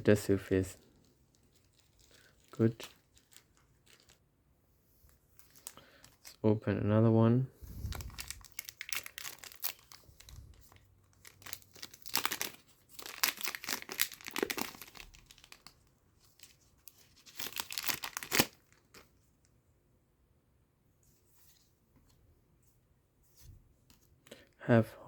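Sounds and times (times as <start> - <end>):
foil pack crinkling and ripping: 0.9 - 4.2, 5.4 - 6.4, 7.7 - 19.1.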